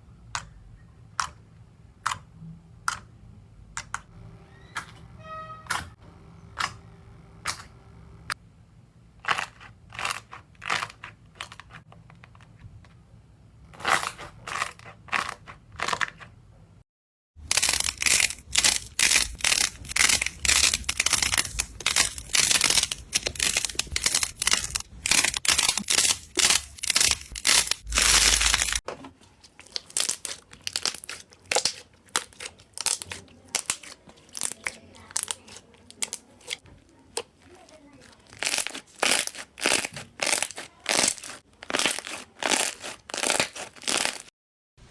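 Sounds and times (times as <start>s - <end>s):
slime crackling and popping: 17.4s - 28.8s, 29.5s - 44.3s.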